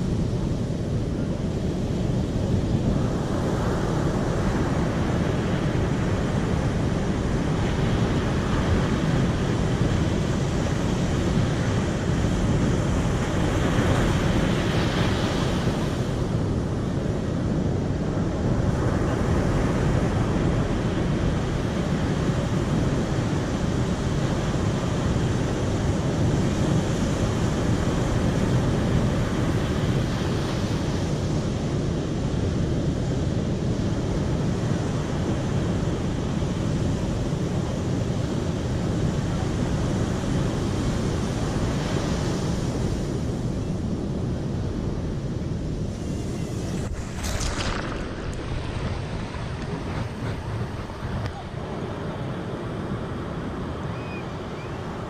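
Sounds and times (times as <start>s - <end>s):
running water rushing: 46.3s - 51.2s.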